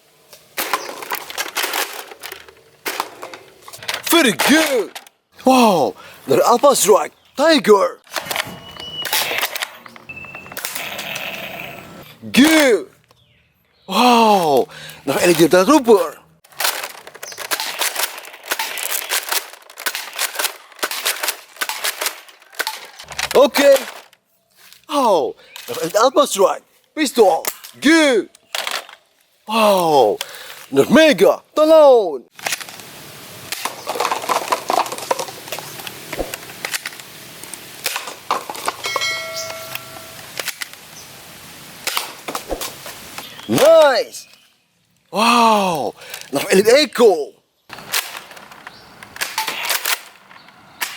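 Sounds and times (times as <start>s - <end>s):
plastic toy blaster clicks and rattles: 16.5s - 24.1s, 47.7s - 50.9s
short ringing tone: 38.9s - 40.3s.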